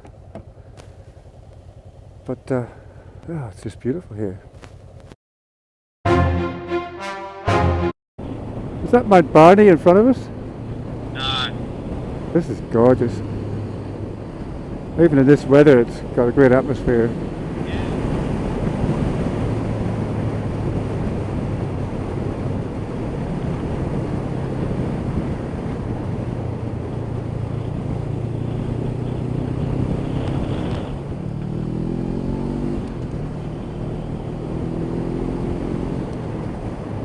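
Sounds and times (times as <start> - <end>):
wind rush on microphone: 15.8 - 31.2
motorcycle engine accelerating: 17.2 - 37.0.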